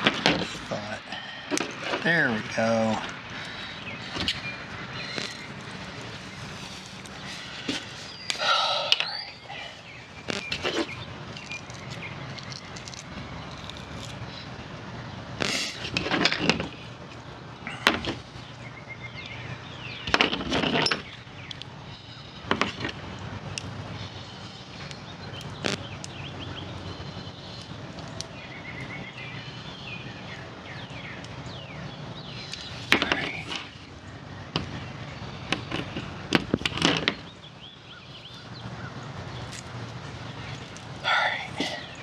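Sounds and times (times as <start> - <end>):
tools and metal parts clinking: 20.2 - 21.1.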